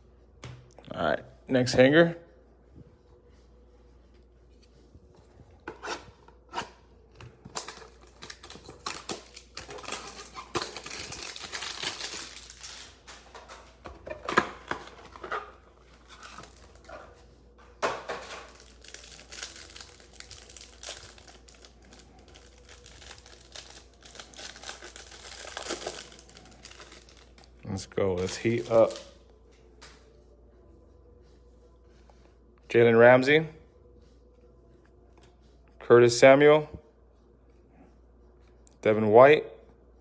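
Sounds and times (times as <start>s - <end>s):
plastic wrapper crinkling: 7.6s - 13.6s, 15.8s - 16.9s, 18.2s - 29.2s.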